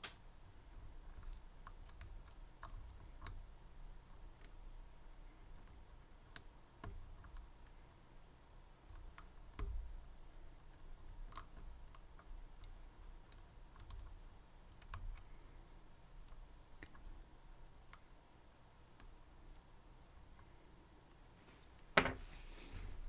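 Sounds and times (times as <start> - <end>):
soft handling knock: 22.0 - 22.9.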